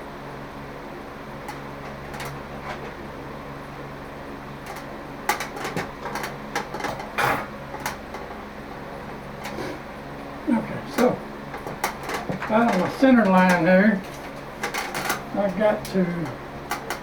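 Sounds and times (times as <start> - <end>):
steady low hum: 0.0 - 17.0
sharp clicks and light knocks: 10.9 - 17.0.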